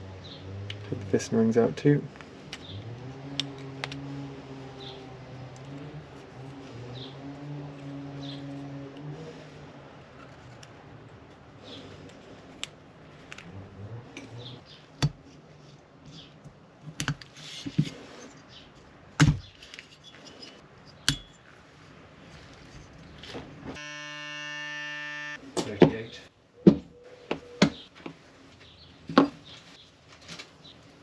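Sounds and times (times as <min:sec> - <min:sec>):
steady buzzing tone: 0:23.8 - 0:25.4.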